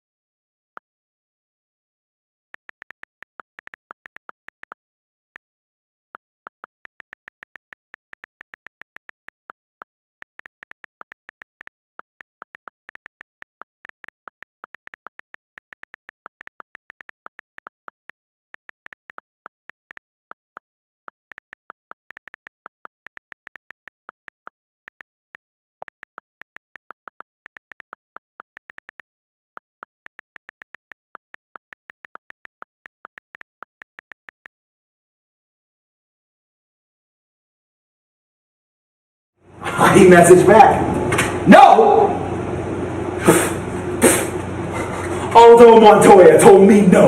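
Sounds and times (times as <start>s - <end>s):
keyboard typing clicks: 2.6s - 4.8s, 6.1s - 34.6s.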